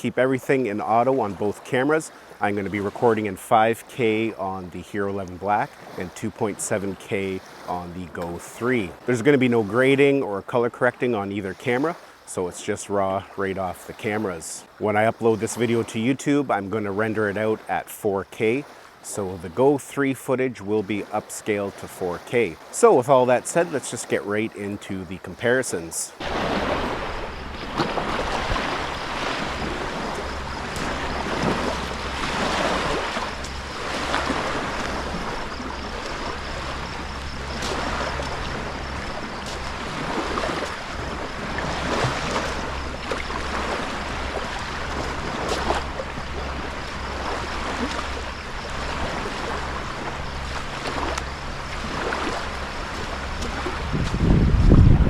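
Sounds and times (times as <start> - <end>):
rushing water: 0.0 - 55.0
wind buffeting microphone: 26.2 - 55.0.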